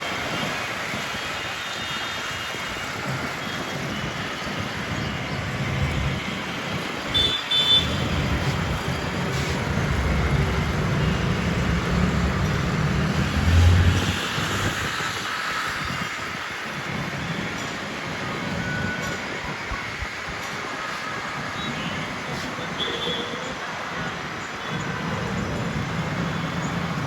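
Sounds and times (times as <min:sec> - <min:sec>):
traffic rumble: 0:00.0 - 0:27.0
vehicle passing close: 0:08.1 - 0:15.0.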